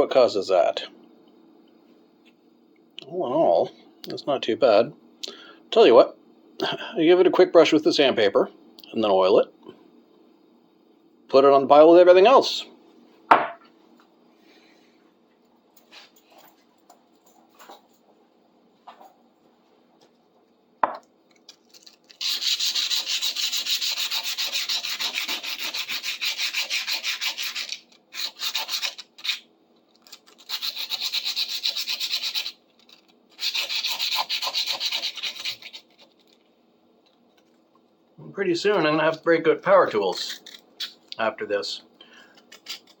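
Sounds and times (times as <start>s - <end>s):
sandpaper rubbing on metal: 22.2s - 29.4s, 30.4s - 32.6s, 33.4s - 36.0s.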